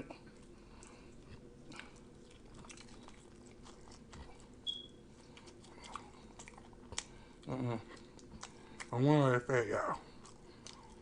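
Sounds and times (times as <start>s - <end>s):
faint chewing: 0.0s - 11.0s
brief high squeak: 4.6s - 5.0s.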